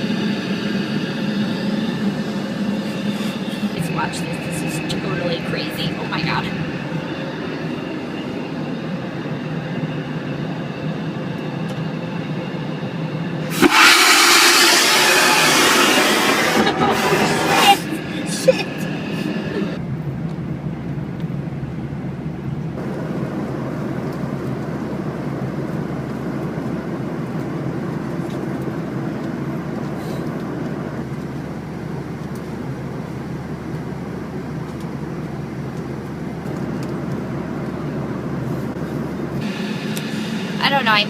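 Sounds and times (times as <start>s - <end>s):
airliner cabin engine rumble: 0.0s - 41.0s
wide hiss: 13.4s - 19.4s.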